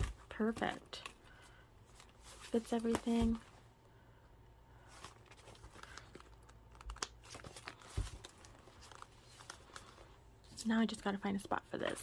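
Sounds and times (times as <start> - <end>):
paper rustling and crinkling: 1.9 - 3.5, 4.8 - 10.2.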